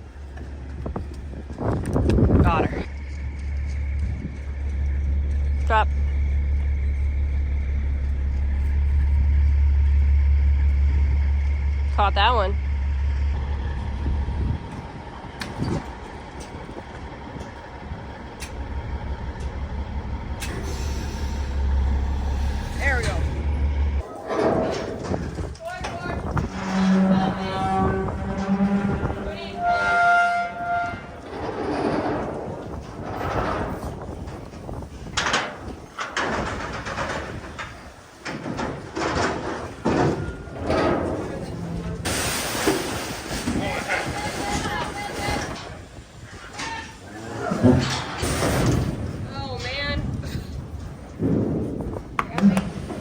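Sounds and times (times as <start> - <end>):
truck engine rumble: 0.0 - 53.0
hooves clattering on metal: 14.6 - 53.0.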